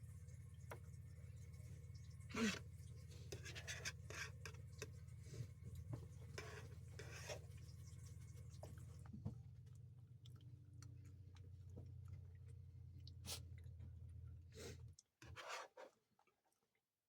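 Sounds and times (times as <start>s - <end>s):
scrape: 3.2s - 4.5s, 6.3s - 7.4s, 14.6s - 16.0s.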